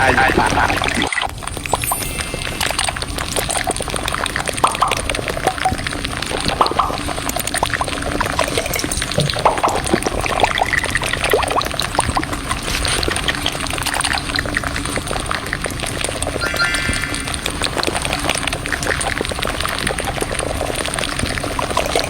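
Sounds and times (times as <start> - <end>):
water trickling: 1.4 - 22.0
small clicks and splashes: 3.8 - 16.4, 18.2 - 22.0.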